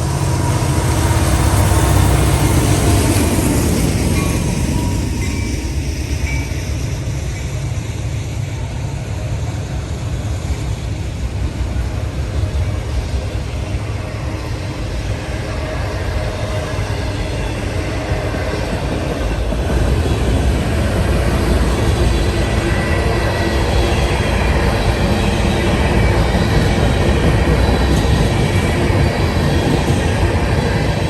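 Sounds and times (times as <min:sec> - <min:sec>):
train wheels rumbling on rail: 0:00.0 - 0:31.0
high squeal: 0:00.1 - 0:10.8.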